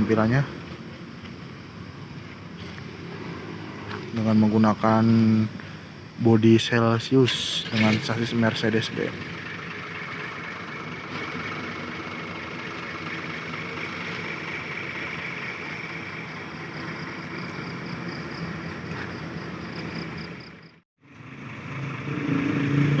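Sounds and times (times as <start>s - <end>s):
diesel bus engine idling: 7.0s - 22.1s.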